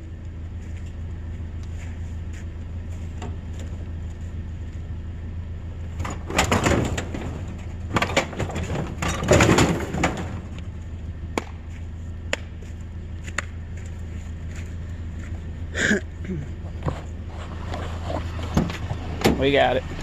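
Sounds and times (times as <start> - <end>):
steady low hum: 0.0 - 20.0
rustling and clattering: 5.9 - 11.0.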